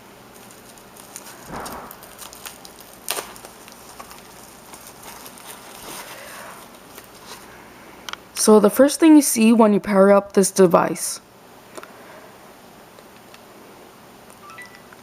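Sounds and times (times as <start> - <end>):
packaging rustling: 0.3 - 7.5.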